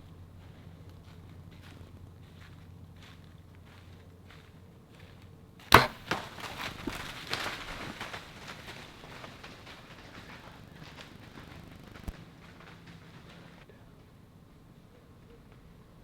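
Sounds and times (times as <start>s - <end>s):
sharp knock: 5.8s - 6.2s.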